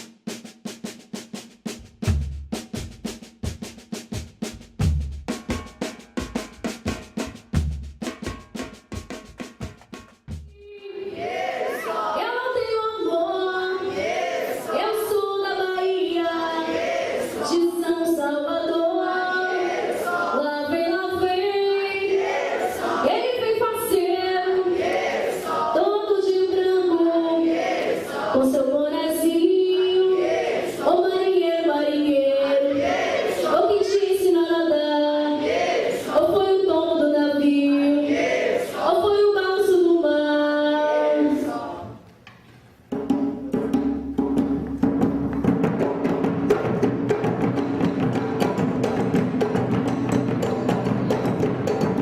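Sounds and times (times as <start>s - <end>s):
women and children singing: 10.6s - 42.1s.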